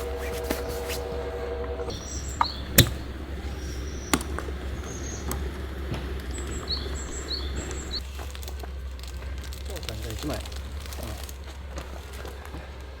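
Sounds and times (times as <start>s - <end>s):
high bird chirps: 0.0s - 8.0s
sharp clicks and knocks: 0.0s - 8.0s
steady hum: 0.0s - 8.0s.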